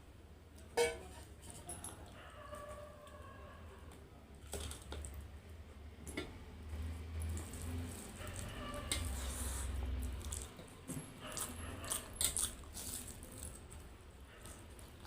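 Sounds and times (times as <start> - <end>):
wet squishy chewing: 7.0 - 15.0.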